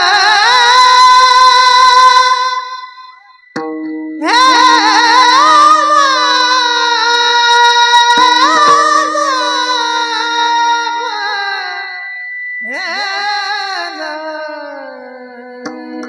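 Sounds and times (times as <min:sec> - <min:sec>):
steady drone note: 0:04.2 - 0:14.2
person singing held note with vibrato: 0:04.2 - 0:16.0.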